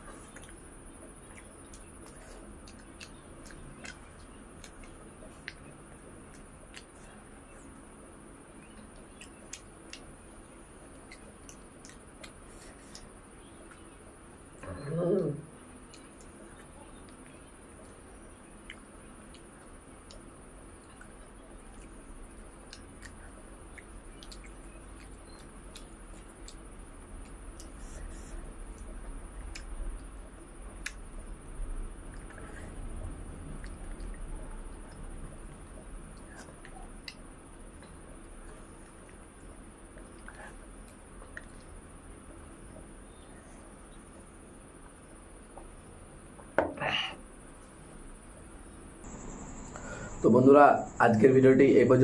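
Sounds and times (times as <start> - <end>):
chewing mouth smacks: 1.2 - 5.7, 8.6 - 10.1, 11.0 - 13.9, 15.8 - 31.2, 32.0 - 41.8
steady hiss: 15.5 - 52.0.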